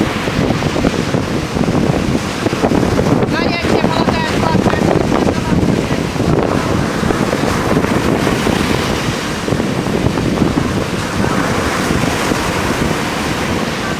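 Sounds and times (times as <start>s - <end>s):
sea waves breaking: 0.0s - 13.9s
wind buffeting microphone: 0.0s - 13.9s.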